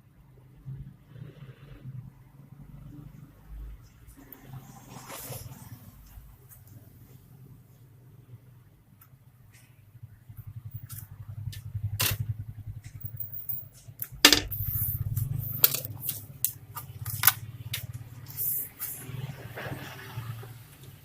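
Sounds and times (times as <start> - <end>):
steady low hum: 6.2 - 19.0
laptop parts clicking and knocking: 14.0 - 14.7, 15.5 - 17.9.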